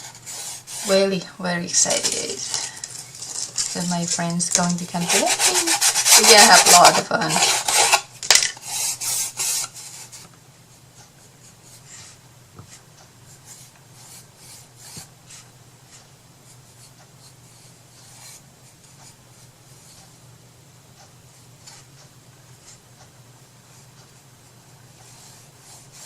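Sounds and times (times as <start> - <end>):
hand rubbing on paper and wood: 0.0 - 1.1, 3.3 - 8.0
low steady hum: 0.0 - 26.0.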